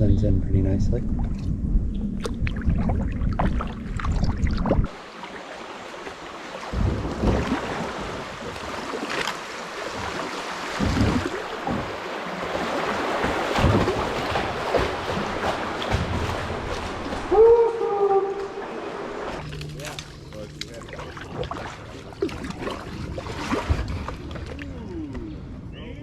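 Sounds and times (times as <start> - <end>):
wind rumble on microphone: 0.0 - 5.0, 6.7 - 8.5
paddle splashing water: 2.2 - 24.9.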